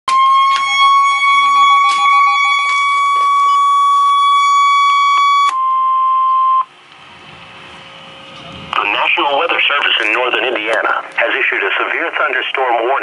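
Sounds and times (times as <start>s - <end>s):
rapid beeping: 0.1s - 5.6s
steady alarm tone from speaker: 0.1s - 6.7s.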